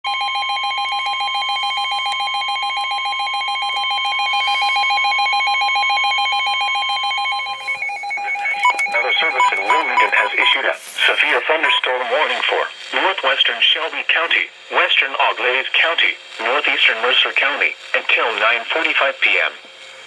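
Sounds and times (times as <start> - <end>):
alert tone steady and pulsing: 0.1 - 10.6
person reading a warning: 7.6 - 19.5.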